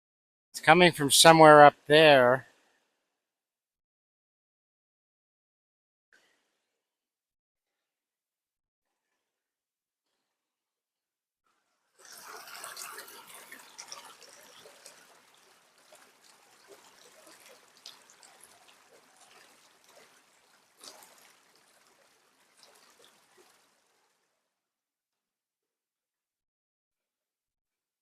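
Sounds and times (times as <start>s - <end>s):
spatter of small splashes: 12.0s - 24.2s
creek water rushing over rocks: 12.1s - 23.7s.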